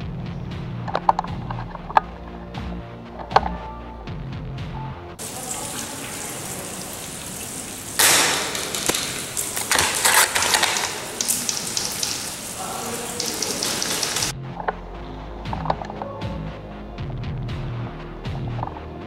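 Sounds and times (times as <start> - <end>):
steady rain hiss: 5.2 - 14.3
crackles: 7.4 - 14.3.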